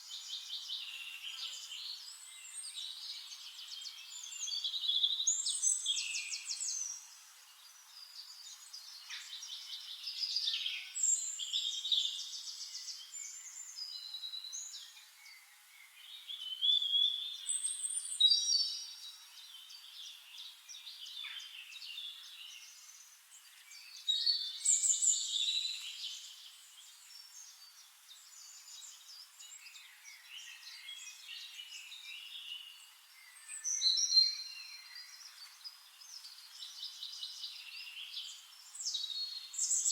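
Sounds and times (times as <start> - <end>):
songbirds singing: 0.0 - 39.9.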